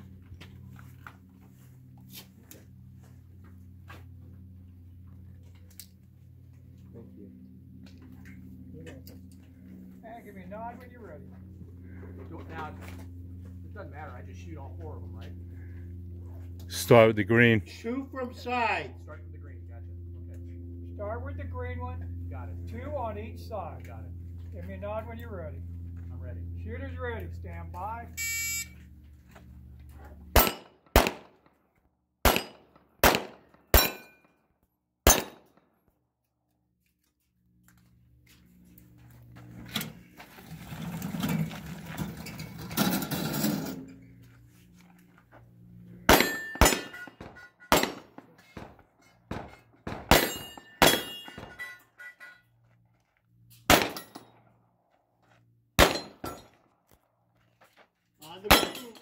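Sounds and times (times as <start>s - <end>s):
shot timer beep: 28.2s - 28.8s
pistol shots: 30.3s - 31.4s, 32.2s - 34.1s, 35.0s - 35.5s, 46.1s - 48.7s, 49.3s - 51.6s, 53.7s - 54.2s, 55.8s - 56.5s, 58.5s - 59.0s
steel target ringing: 33.8s - 34.2s, 46.1s - 48.0s, 50.1s - 52.4s, 58.5s - 59.0s.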